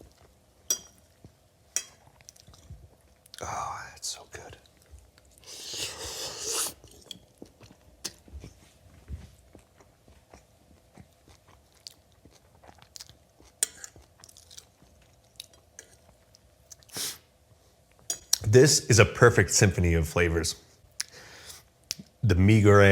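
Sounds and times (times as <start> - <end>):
quiet chewing with crunches: 0.0 - 3.5, 4.2 - 6.0, 6.6 - 18.4
person slurping noodles: 5.4 - 7.0.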